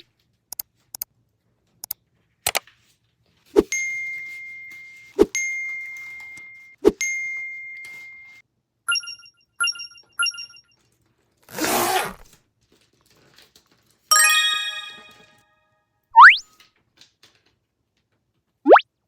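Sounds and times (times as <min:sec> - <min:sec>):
cartoon ding: 0:14.1 - 0:15.4
bright many-toned chime: 0:14.1 - 0:15.5
quick pitched blips: 0:16.2 - 0:16.4.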